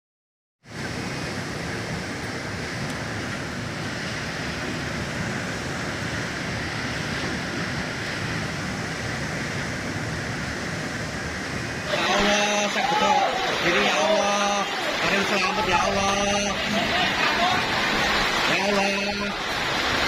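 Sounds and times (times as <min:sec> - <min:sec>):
heavy wind-driven rain: 0:00.6 - 0:20.0.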